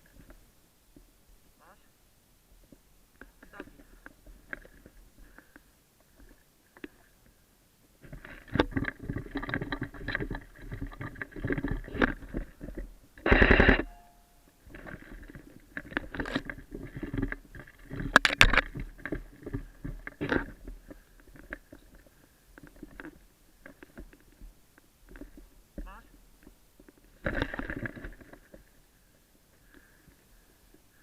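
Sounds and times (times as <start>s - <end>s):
rustling and gear handling: 8.0s - 31.0s.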